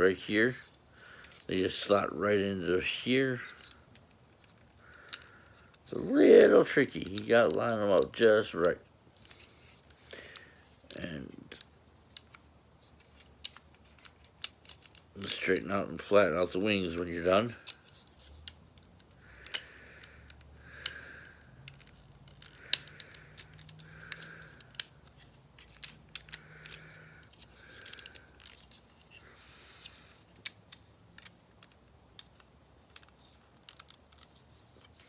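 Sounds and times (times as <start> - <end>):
plastic sliding on plastic: 0.1 - 35.0
plastic toy joints clicking: 9.2 - 35.0.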